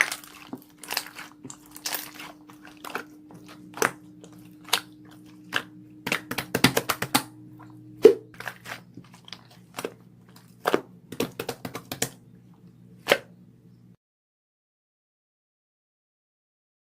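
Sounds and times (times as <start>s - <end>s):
sharp clicks and crunches: 0.0s - 7.2s
low electrical hum: 0.0s - 14.0s.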